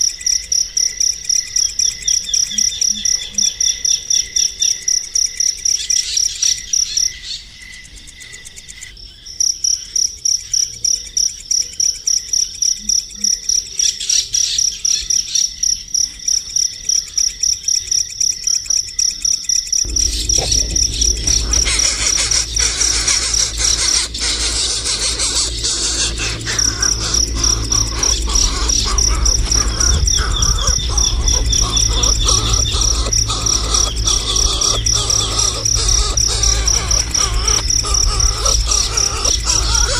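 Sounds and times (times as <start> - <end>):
rapid high-pitched pulsed chirping: 0.0 - 8.9, 10.1 - 39.9
low rumble: 19.9 - 39.9.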